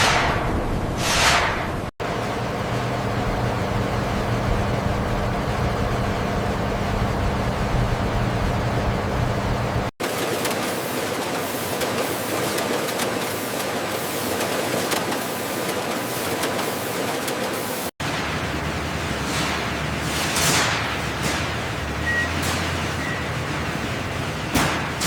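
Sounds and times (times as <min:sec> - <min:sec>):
factory machinery low hum: 0:00.0 - 0:25.0
factory machinery hiss: 0:10.0 - 0:17.9.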